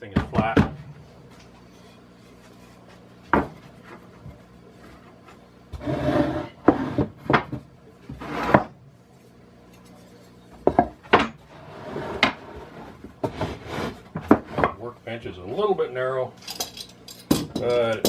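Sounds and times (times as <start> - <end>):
boards scraping against wood: 4.8 - 8.8, 11.4 - 14.8.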